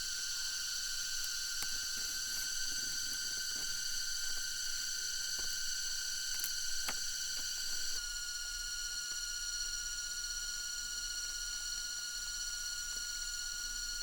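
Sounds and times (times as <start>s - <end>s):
insects droning: 0.0s - 8.0s
light clicks and ticks: 0.0s - 8.0s.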